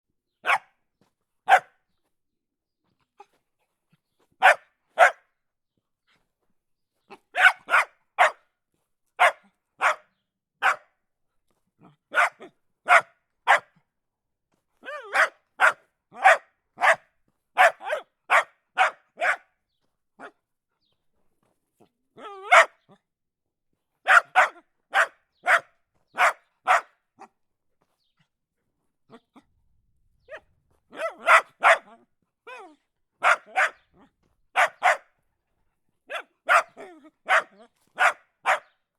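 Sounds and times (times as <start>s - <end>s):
dog barking: 0.4s - 0.7s, 1.5s - 1.8s, 4.4s - 5.3s, 7.3s - 8.4s, 9.2s - 11.0s, 12.1s - 13.8s, 14.8s - 17.0s, 17.6s - 19.6s, 22.4s - 22.8s, 24.0s - 27.3s, 30.3s - 32.6s, 33.2s - 35.2s, 36.1s - 38.8s.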